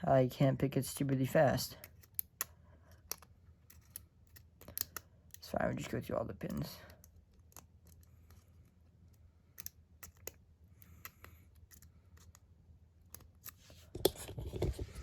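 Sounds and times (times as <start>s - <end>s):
lock pick clicks and scrapes: 1.8s - 5.4s, 9.1s - 12.4s, 13.0s - 15.0s.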